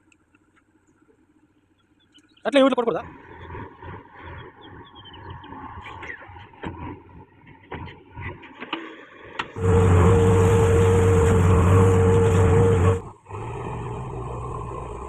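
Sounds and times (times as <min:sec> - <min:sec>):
diesel engine running hard: 0:09.6 - 0:15.0
steady whine: 0:09.6 - 0:15.0.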